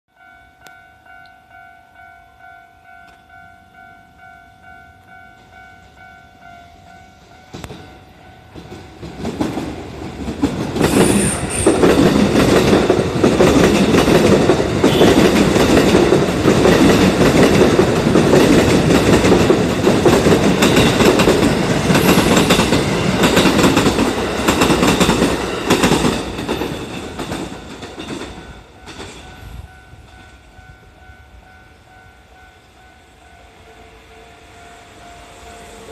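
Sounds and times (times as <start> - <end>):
electric train passing: 0.2 - 35.9
train wheels clicking over rail joints: 7.5 - 30.5.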